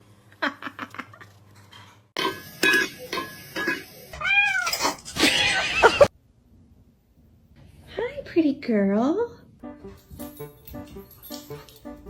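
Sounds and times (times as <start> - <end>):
cat meowing: 4.2 - 6.1.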